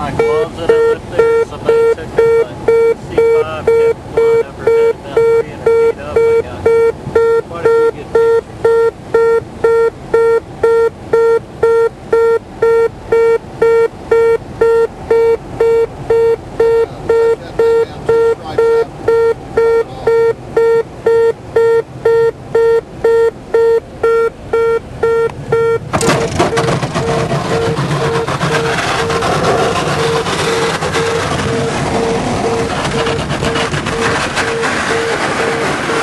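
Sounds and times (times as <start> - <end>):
warning horn beeping: 0.0 - 36.0
loud rough noise: 25.7 - 36.0.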